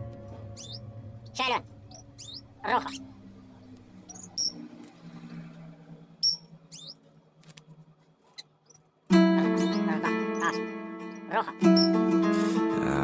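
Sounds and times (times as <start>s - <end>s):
bird chicks squeaky chirps: 0.4s - 3.2s, 4.0s - 4.7s, 6.2s - 7.1s, 8.3s - 12.0s.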